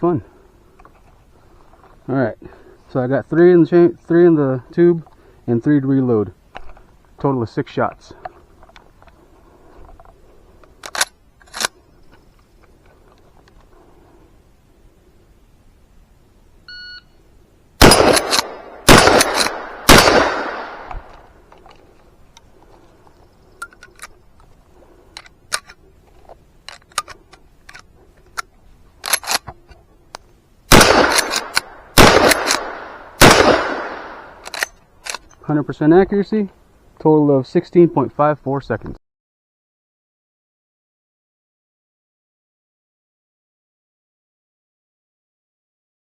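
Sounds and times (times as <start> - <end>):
shot timer beep: 16.7 - 17.2
rifle shots: 17.8 - 21.2, 30.7 - 34.7.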